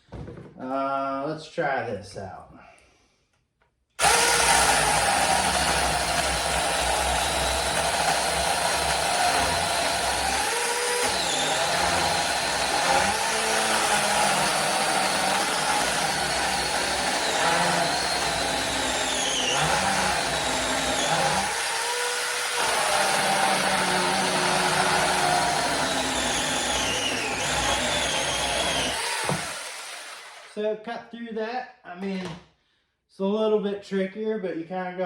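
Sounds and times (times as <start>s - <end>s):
electric chainsaw cutting wood: 4.0s - 30.6s.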